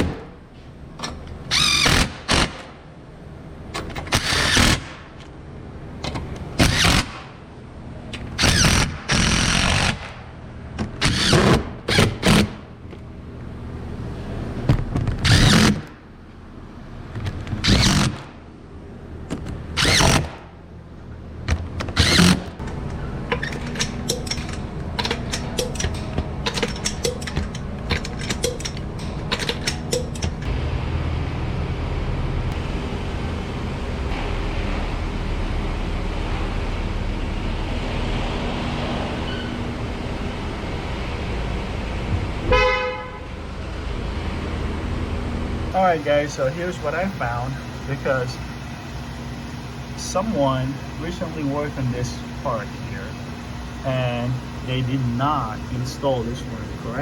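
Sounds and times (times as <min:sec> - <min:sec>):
steady hum: 0:00.0 - 0:57.0.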